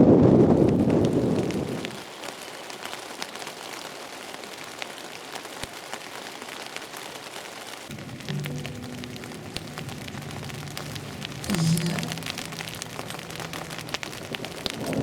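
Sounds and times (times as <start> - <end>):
wind gust on microphone: 0.0 - 2.0
raindrops ticking on a surface: 0.0 - 15.0.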